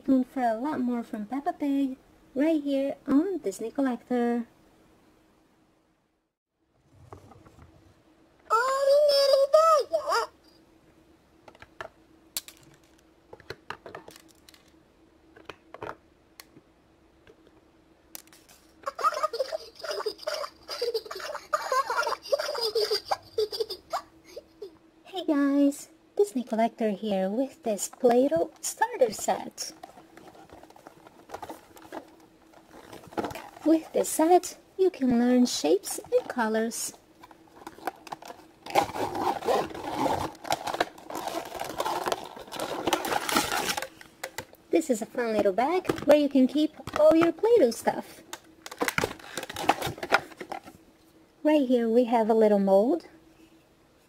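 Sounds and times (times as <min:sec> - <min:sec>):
faint steady hum: 0:00.0 - 0:54.0
plastic packaging crinkling: 0:14.0 - 0:14.8, 0:29.7 - 0:34.2, 0:37.2 - 0:44.5, 0:48.3 - 0:50.8.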